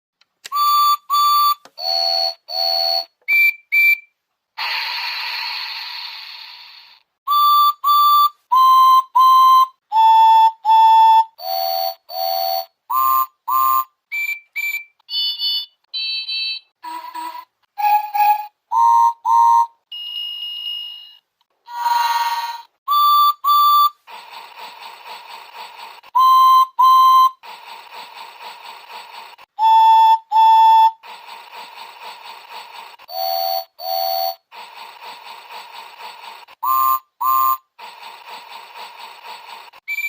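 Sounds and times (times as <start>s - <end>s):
toy train whistle toots: 0.4s - 5.2s, 7.3s - 24.1s, 26.0s - 27.9s, 29.4s - 34.9s, 36.4s - 37.8s, 39.8s - 40.0s
hissing burst: 4.6s - 7.1s
steam engine chuffing: 22.9s - 40.0s.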